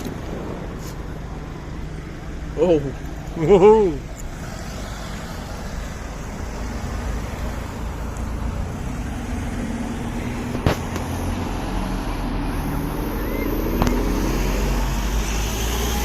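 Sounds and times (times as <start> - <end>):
motor vehicle rumbling: 0.0 - 16.0
sharp crack: 10.5 - 11.2.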